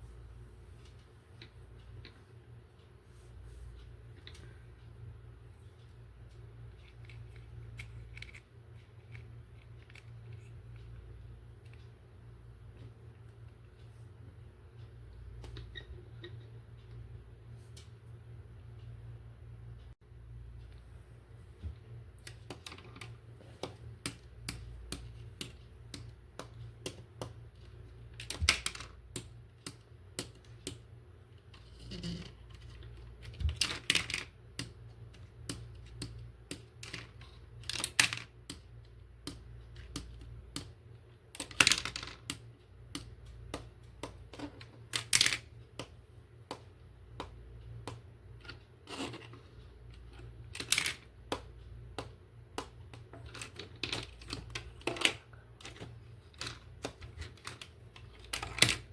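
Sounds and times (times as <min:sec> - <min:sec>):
small plastic clicks: 0:31.5 - 0:58.9.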